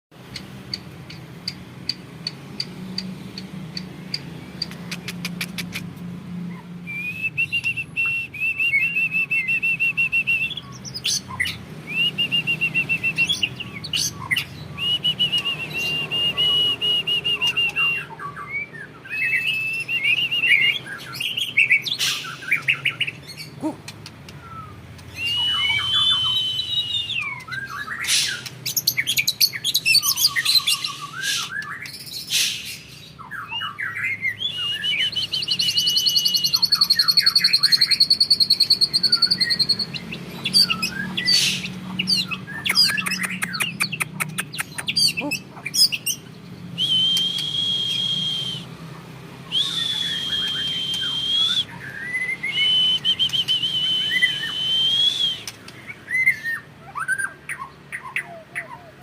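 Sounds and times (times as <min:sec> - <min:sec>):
bird singing trills and whistles: 0:06.5 - 0:48.8, 0:49.4 - 0:59.0.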